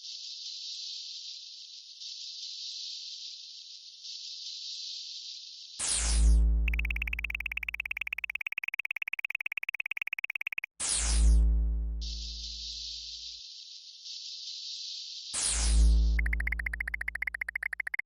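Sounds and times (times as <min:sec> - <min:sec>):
high electronic tone pulsing: 0:06.7 - 0:10.7, 0:16.2 - 0:18.0.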